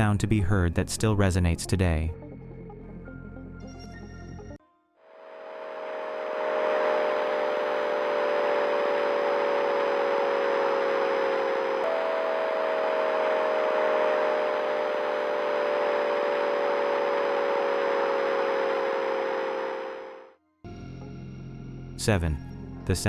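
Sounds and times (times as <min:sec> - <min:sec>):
low humming chord: 0:05.1 - 0:22.9.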